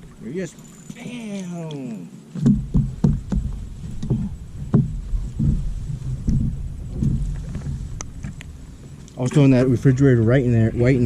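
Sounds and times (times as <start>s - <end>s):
knocks and thumps on a boat: 2.4s - 9.8s
low rumble: 2.5s - 11.0s.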